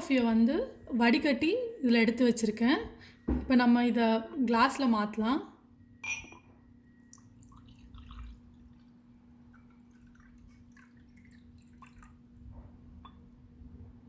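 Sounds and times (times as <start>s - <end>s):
liquid trickling into glass: 6.0s - 13.2s
liquid drips: 6.8s - 13.2s.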